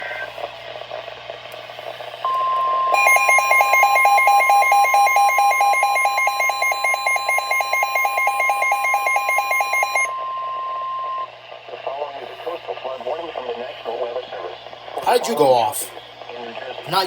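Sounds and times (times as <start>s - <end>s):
faint radio static: 0.0s - 4.2s, 9.9s - 17.0s
rapid receiver alarm beeps: 2.2s - 11.3s
steady weather radio alarm tone: 2.2s - 16.0s.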